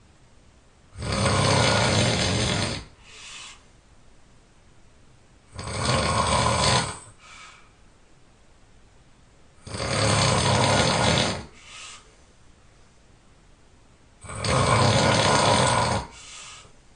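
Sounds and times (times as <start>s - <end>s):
person snoring loudly: 0.9s - 3.0s, 5.5s - 7.2s, 9.6s - 11.6s, 14.2s - 16.3s
quiet breath: 2.8s - 3.8s, 6.8s - 7.9s, 11.2s - 12.4s, 16.0s - 16.9s.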